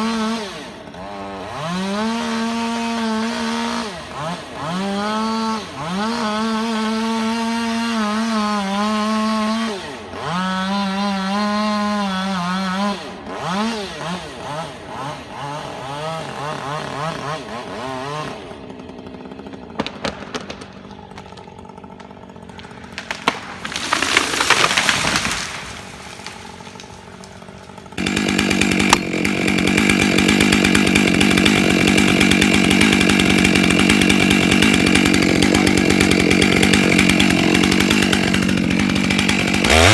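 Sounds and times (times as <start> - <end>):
chainsaw running at full throttle: 0.0 - 39.9
wood cracking: 18.9 - 39.9
felled tree crashing down: 19.5 - 39.9.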